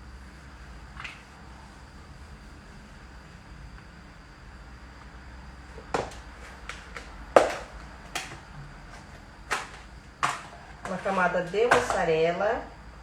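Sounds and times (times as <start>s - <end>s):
kitchen items knocking on counter: 5.8s - 8.5s, 9.5s - 12.1s.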